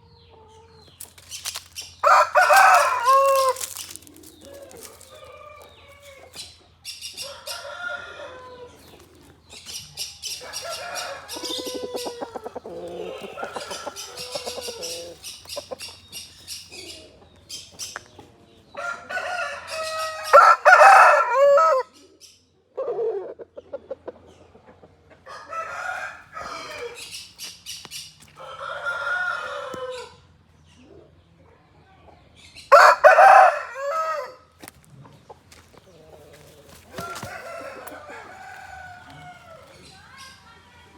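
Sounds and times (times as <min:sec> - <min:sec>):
soft clucking calls: 0:00.9 - 0:07.7, 0:08.4 - 0:18.3
rooster crowing: 0:02.0 - 0:06.4, 0:07.2 - 0:08.9, 0:10.4 - 0:15.2, 0:18.8 - 0:21.9, 0:25.3 - 0:27.0, 0:28.4 - 0:30.2, 0:32.7 - 0:34.5, 0:36.3 - 0:39.8.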